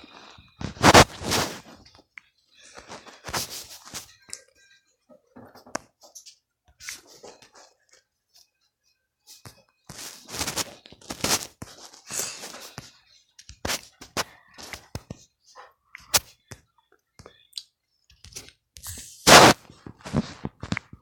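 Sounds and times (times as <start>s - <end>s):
drawing on paper: 0.6s - 1.8s, 18.8s - 20.6s.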